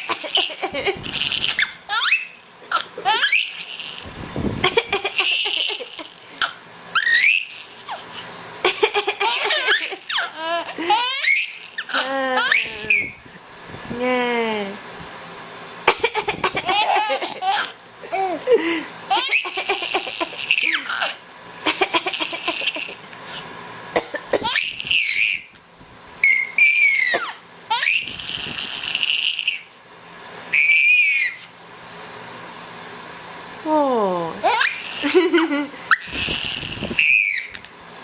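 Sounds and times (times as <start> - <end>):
baby squealing and laughing: 0.0 - 13.2, 15.9 - 18.4, 19.1 - 23.4, 24.4 - 25.5, 26.2 - 29.8, 30.5 - 31.5, 34.4 - 35.2, 35.9 - 37.7
person coughing: 24.0 - 24.4.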